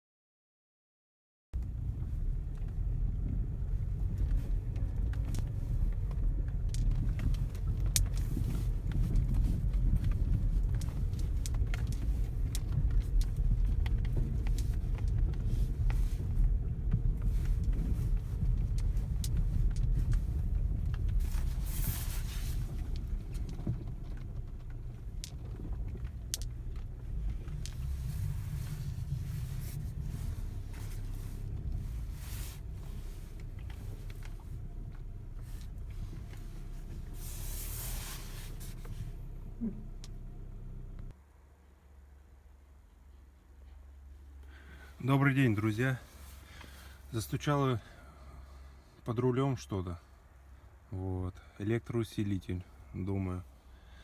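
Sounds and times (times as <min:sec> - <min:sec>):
road rumble inside car: 0:01.6 - 0:54.0.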